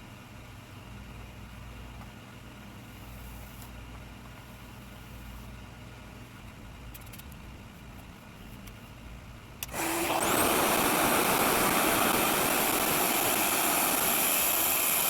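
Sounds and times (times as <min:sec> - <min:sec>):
hair dryer suction hum: 0:09.7 - 0:15.0.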